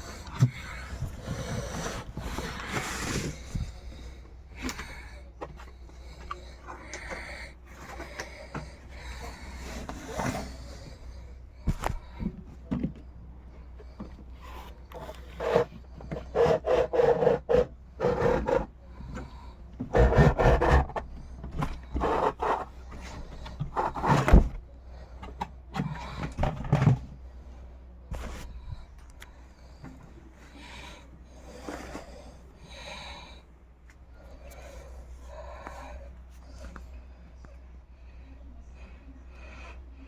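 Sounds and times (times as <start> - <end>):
packaging rubbing and scraping: 0.8 - 3.9.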